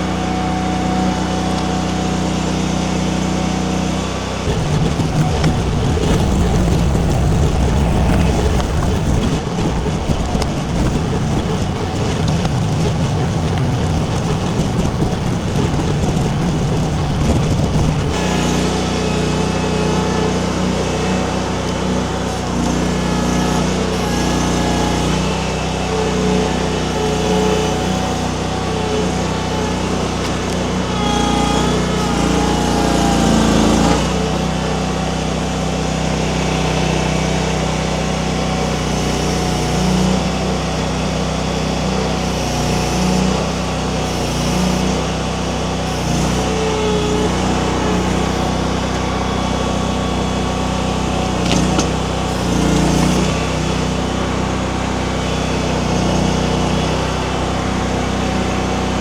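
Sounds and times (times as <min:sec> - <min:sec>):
skid steer engine running: 0:00.0 - 0:59.0.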